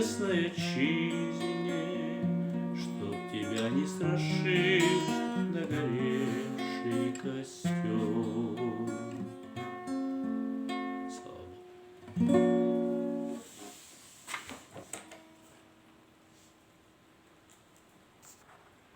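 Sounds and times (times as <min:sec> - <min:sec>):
acoustic guitar strumming chords: 0:00.0 - 0:13.8.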